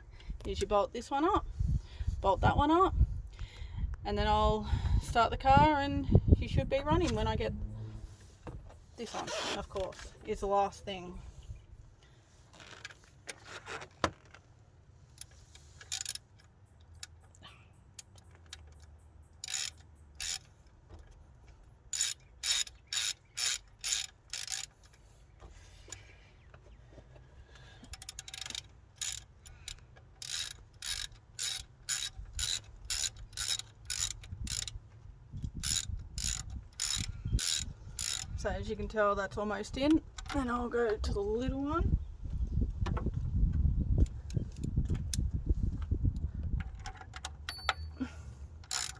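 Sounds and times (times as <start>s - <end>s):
socket ratchet clicking: 15.1s - 21.1s, 21.9s - 25.0s, 27.6s - 38.4s, 48.6s - 48.9s.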